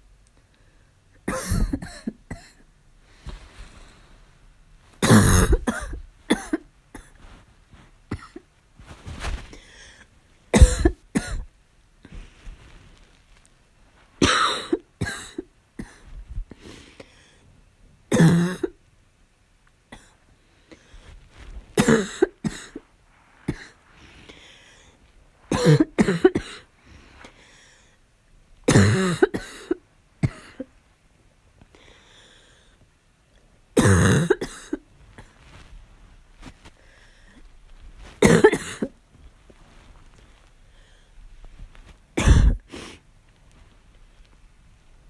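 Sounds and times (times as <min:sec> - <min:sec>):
person coughing harshly: 0:01.3 - 0:02.6, 0:05.0 - 0:07.2, 0:08.1 - 0:08.4, 0:10.5 - 0:11.5, 0:14.2 - 0:16.0, 0:18.1 - 0:18.8, 0:21.8 - 0:22.8, 0:23.5 - 0:23.8, 0:25.5 - 0:26.7, 0:28.7 - 0:30.7, 0:33.8 - 0:35.3, 0:38.2 - 0:39.0, 0:42.2 - 0:43.0.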